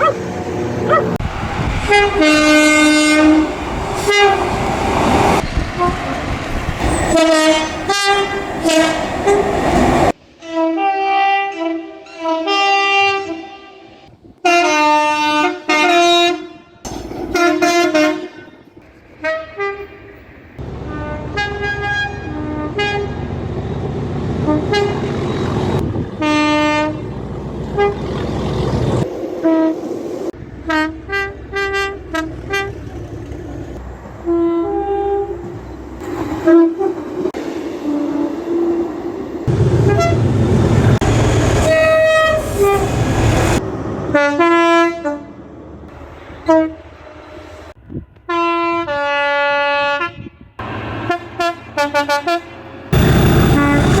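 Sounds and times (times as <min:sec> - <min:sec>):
moving train rumble: 0:00.0 - 0:10.6, 0:16.9 - 0:49.0, 0:50.3 - 0:54.0
train horn blasts: 0:01.7 - 0:04.6, 0:05.8 - 0:09.6, 0:10.4 - 0:20.1, 0:20.8 - 0:23.4, 0:24.4 - 0:25.3, 0:26.2 - 0:28.1, 0:29.4 - 0:32.8, 0:34.2 - 0:35.6, 0:36.3 - 0:38.8, 0:39.8 - 0:40.4, 0:41.6 - 0:45.4, 0:46.4 - 0:47.6, 0:48.2 - 0:54.0.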